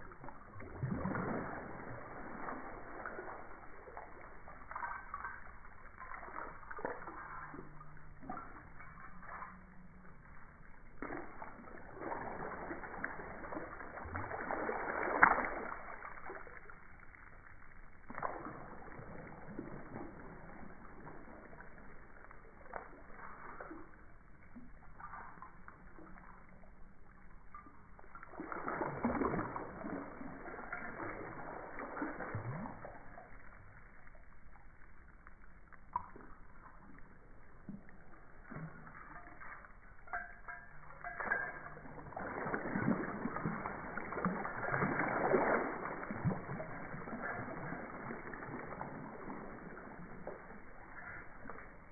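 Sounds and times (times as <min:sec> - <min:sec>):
water splashing and sloshing: 0:00.0 - 0:51.9
sharp water slaps: 0:11.0 - 0:16.4.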